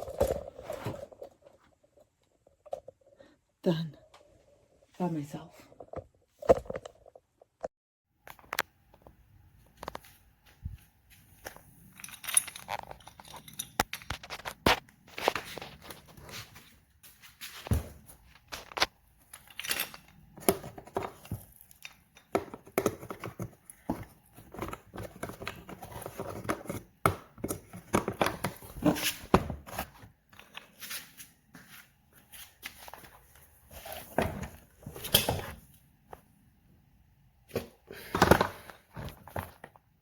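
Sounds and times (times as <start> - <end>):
objects clicking and knocking: 11.4 - 16.0, 18.3 - 30.7.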